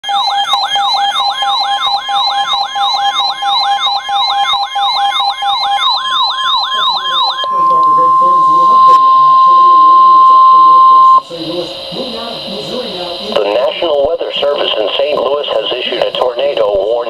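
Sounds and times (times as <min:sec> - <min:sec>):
sweeping siren-like alarm: 0:00.0 - 0:13.6
steady alarm tone: 0:00.0 - 0:17.0.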